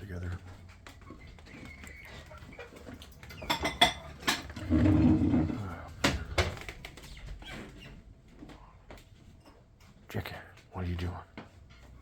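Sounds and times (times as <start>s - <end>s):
containers and utensils clattering: 2.6s - 5.9s.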